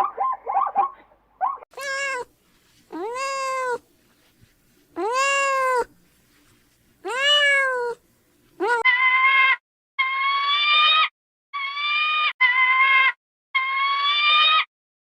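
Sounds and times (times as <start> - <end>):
cat meowing: 1.8 - 2.3, 2.9 - 3.8, 5.0 - 5.9, 7.0 - 8.0, 8.6 - 10.2.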